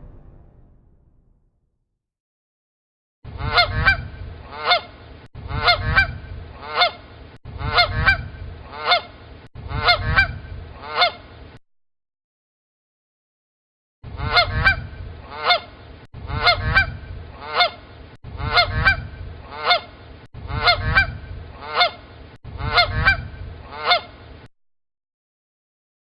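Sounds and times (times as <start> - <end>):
low rumble: 0.0 - 1.5
goose honking: 3.4 - 4.9, 5.5 - 7.0, 7.6 - 11.2, 14.1 - 24.2.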